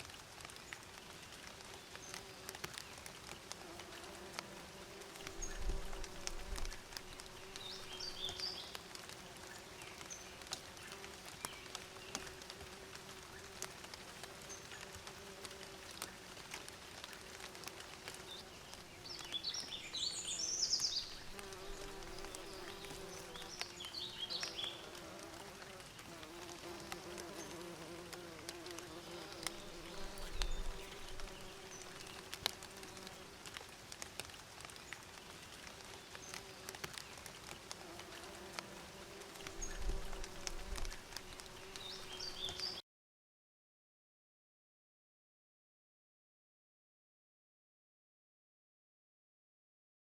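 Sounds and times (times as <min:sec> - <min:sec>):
bees buzzing: 0:20.1 - 0:33.3.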